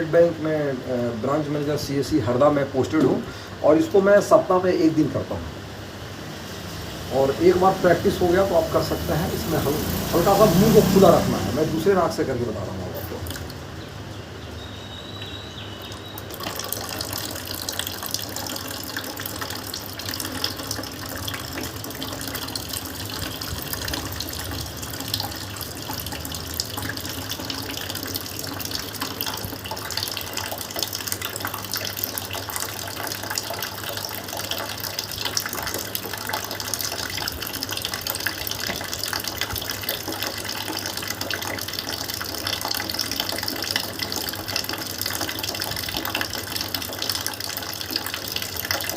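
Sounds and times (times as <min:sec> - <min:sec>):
water pouring from nostril: 0:06.6 - 0:12.0, 0:15.2 - 0:48.9.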